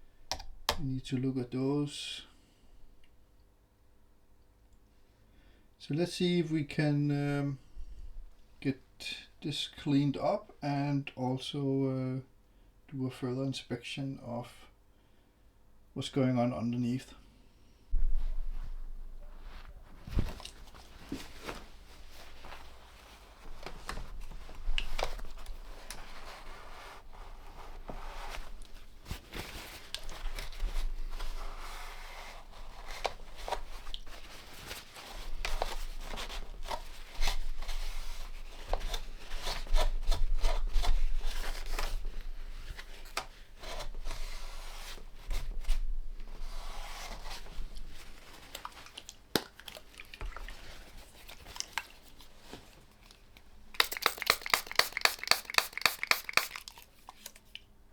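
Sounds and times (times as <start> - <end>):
rustling and crinkling: 17.9 - 54.8.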